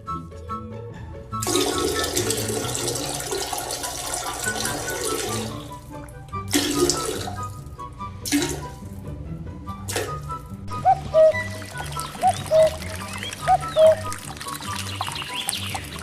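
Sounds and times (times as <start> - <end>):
background music: 0.0 - 16.0
running water rushing: 1.4 - 7.6, 9.9 - 16.0
water splashing: 1.4 - 9.1, 9.8 - 16.0.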